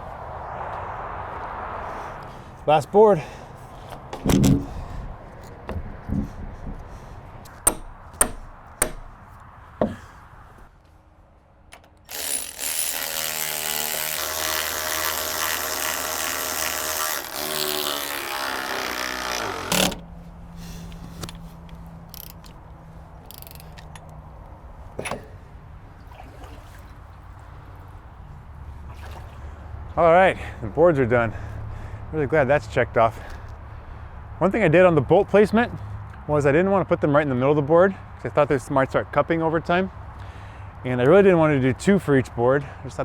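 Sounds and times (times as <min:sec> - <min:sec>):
sharp knocks: 0:07.6 - 0:09.2, 0:09.8 - 0:10.1
power drill boring through wood: 0:12.0 - 0:20.0.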